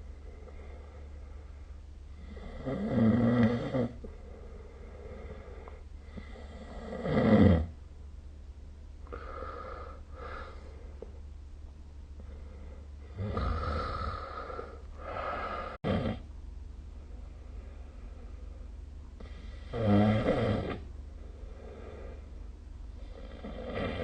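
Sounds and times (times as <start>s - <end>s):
soft breaths: 0.0s - 2.6s, 3.9s - 6.9s, 9.0s - 11.3s, 12.1s - 15.8s, 16.8s - 19.8s, 20.8s - 24.0s
person snoring: 2.1s - 7.7s, 12.2s - 16.2s, 19.2s - 22.3s, 23.0s - 24.0s.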